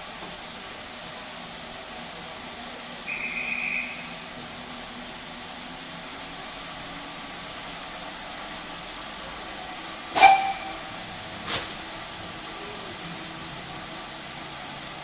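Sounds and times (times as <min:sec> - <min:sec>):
steam hissing: 0:00.0 - 0:15.0
locomotive exhaust beats: 0:03.0 - 0:04.4, 0:10.1 - 0:12.6.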